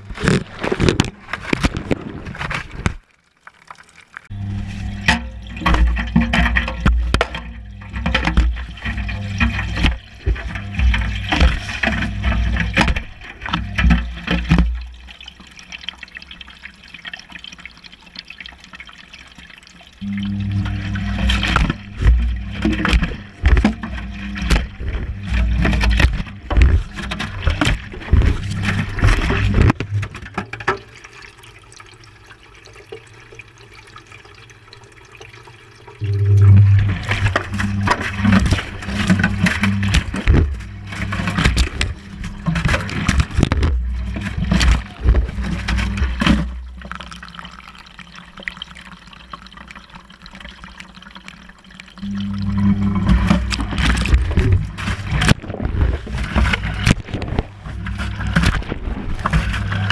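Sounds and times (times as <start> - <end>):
water sloshing: 0.0 - 59.9
washing machine motor hum: 4.3 - 15.3, 20.0 - 46.9, 52.0 - 59.9.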